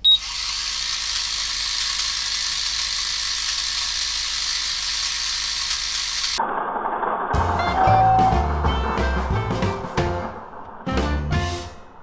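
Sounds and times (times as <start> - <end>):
drone propellers whirring: 0.0 - 6.6.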